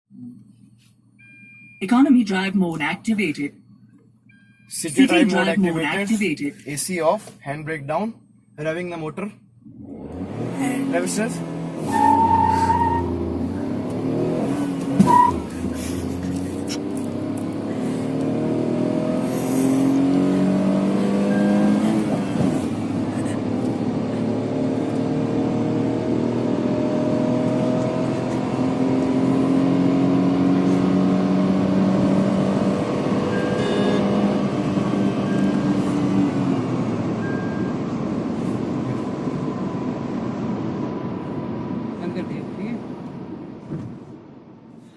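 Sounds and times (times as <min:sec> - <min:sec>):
short beep: 0:01.2 - 0:01.9, 0:03.5 - 0:05.5, 0:21.2 - 0:21.9, 0:33.3 - 0:34.3, 0:37.2 - 0:37.8
car engine accelerating: 0:09.6 - 0:44.9.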